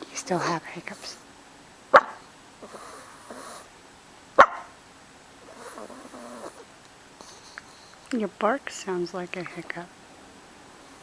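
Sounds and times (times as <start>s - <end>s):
small dog hiccup yips: 2.0s - 2.2s, 4.4s - 4.8s.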